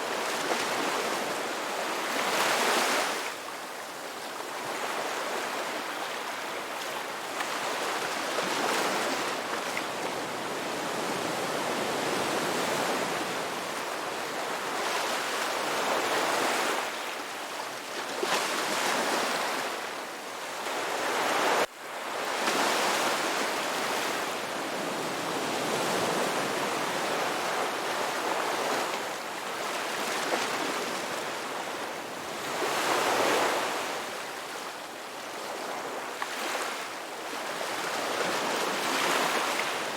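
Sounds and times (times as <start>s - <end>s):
waves breaking and washing in: 0.0s - 39.9s.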